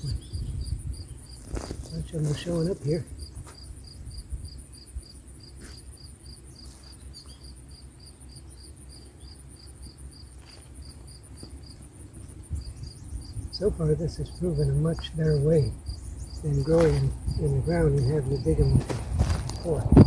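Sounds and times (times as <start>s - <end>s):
cricket chirping: 0.0s - 20.0s
low steady rumble: 6.1s - 20.0s.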